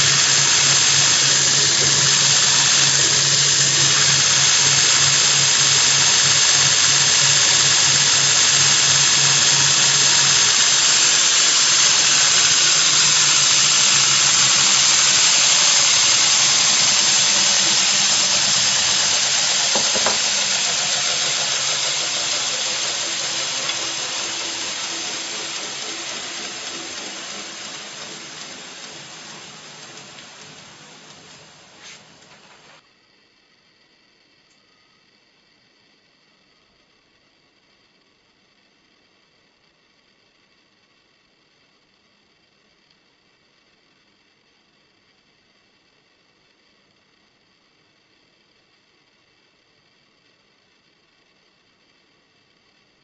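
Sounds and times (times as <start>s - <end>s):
grinding wheel squealing: 0.0s - 32.8s
low motor hum: 0.0s - 32.8s.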